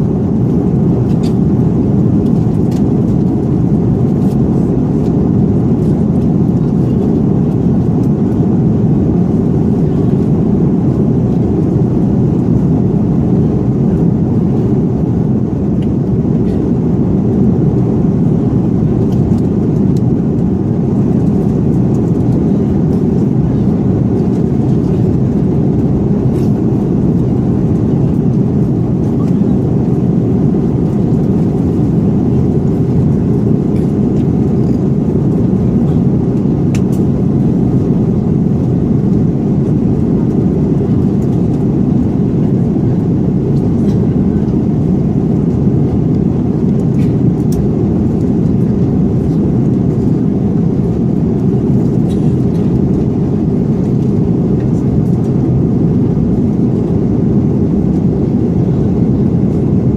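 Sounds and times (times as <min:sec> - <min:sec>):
airliner cabin engine rumble: 0:00.0 - 0:59.9.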